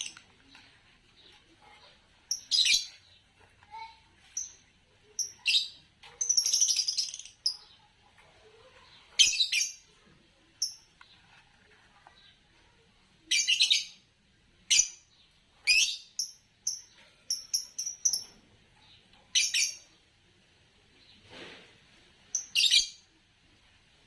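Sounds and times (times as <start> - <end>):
lovebirds chirping: 0.0 - 8.0, 8.8 - 10.0, 10.6 - 11.1, 14.6 - 20.0, 22.3 - 23.1
soft noisy sound: 0.0 - 24.0.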